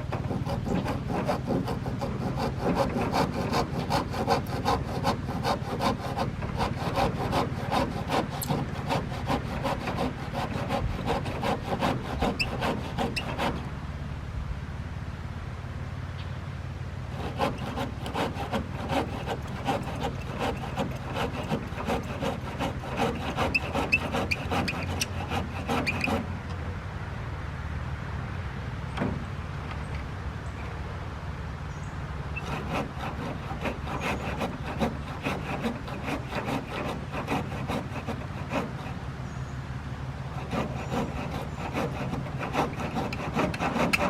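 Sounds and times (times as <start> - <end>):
hand saw cutting wood: 0.0 - 13.7, 17.1 - 26.6, 32.4 - 39.4, 40.2 - 44.0.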